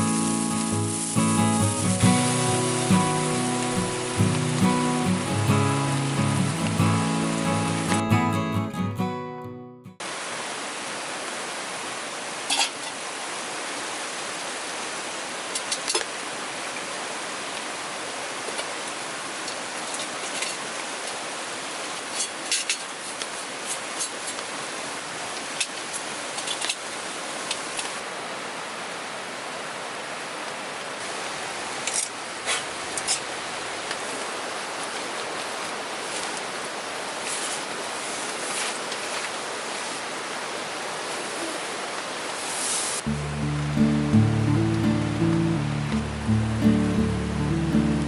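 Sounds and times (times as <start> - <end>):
heavy rain hiss: 0.0 - 8.9, 10.0 - 48.0
background music: 0.0 - 9.9, 43.1 - 48.0.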